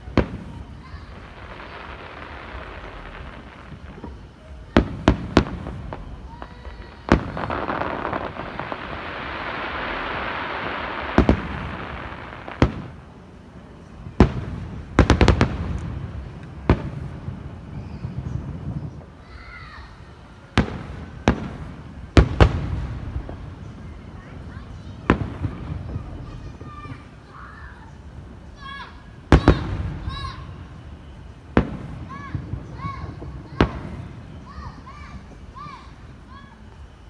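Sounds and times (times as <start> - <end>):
fireworks banging: 0.0 - 37.0
fireworks crackling and hissing: 0.0 - 37.0.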